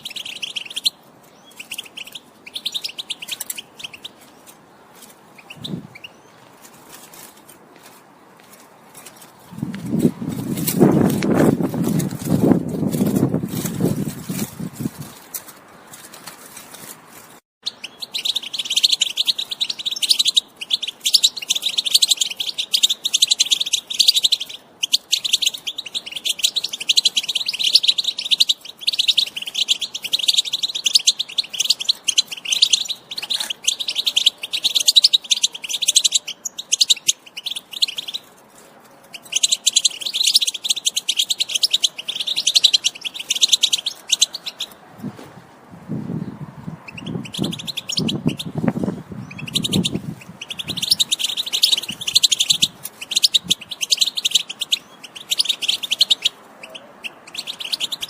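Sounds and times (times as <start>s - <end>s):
goldfinch twittering song: 0.0s - 4.5s, 17.6s - 38.3s, 39.1s - 44.8s, 46.8s - 48.6s, 49.2s - 58.0s.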